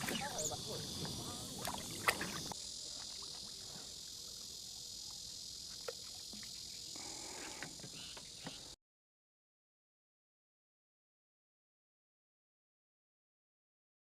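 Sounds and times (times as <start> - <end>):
insects chirring: 0.0 - 8.8.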